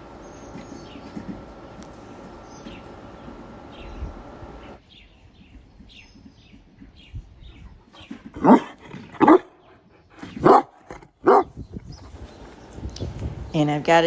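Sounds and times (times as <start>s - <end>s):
large dog barking: 8.4s - 9.6s, 10.2s - 12.7s.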